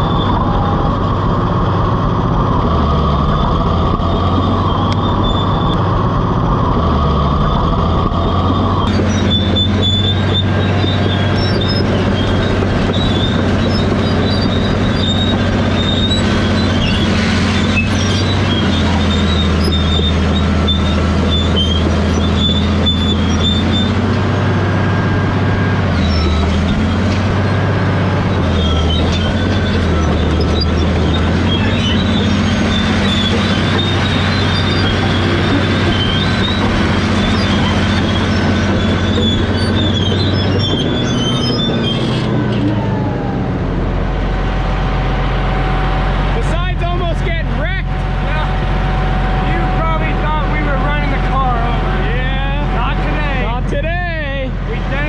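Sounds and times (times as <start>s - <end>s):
steel tracks squealing: 0.0s - 1.8s, 2.6s - 6.0s, 6.7s - 43.4s, 44.2s - 55.0s
diesel engine droning: 0.0s - 55.0s.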